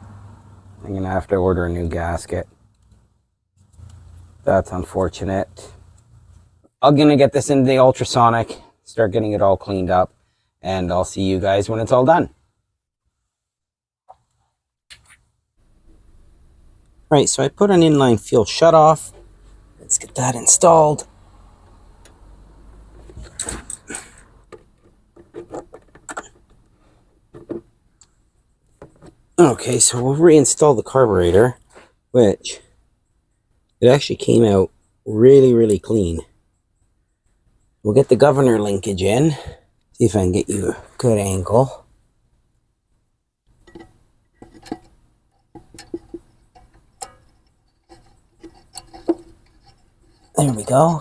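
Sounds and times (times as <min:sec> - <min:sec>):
light clicks and knocks: 0:43.5 - 0:50.7.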